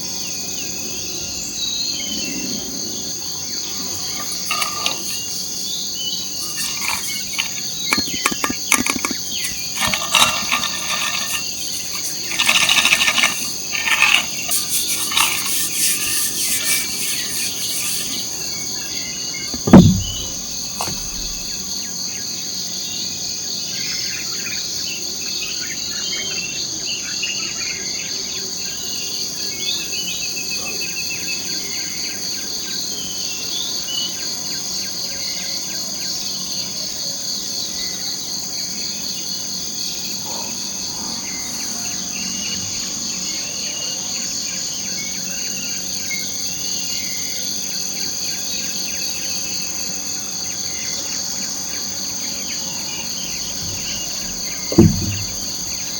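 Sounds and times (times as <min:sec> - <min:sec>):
insects droning: 0:00.0 - 0:22.4
rapid pulsing insect calls: 0:03.0 - 0:18.7.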